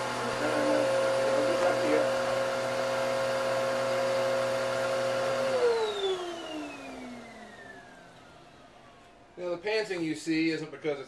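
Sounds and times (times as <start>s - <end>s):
vacuum motor spinning down: 0.0s - 8.8s
vacuum cleaner running: 0.0s - 9.4s.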